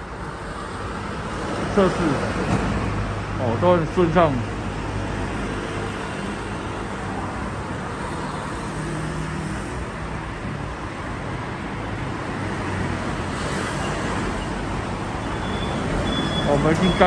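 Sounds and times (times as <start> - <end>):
road traffic hiss: 0.0 - 17.0.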